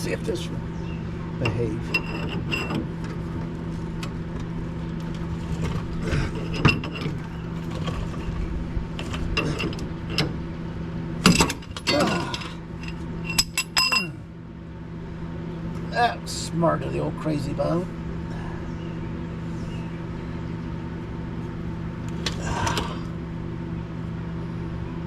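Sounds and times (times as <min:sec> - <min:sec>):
low hum: 0:00.0 - 0:25.0
metal clinking: 0:11.2 - 0:14.2.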